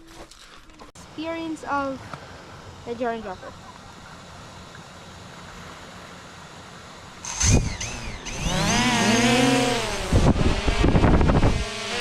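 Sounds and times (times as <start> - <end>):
drone propellers whining: 7.2 - 12.0.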